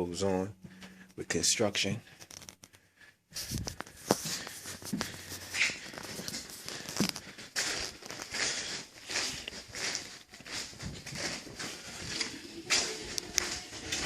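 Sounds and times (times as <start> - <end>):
footsteps and scuffs on floor: 3.3 - 14.0
debris rustling: 3.4 - 14.0.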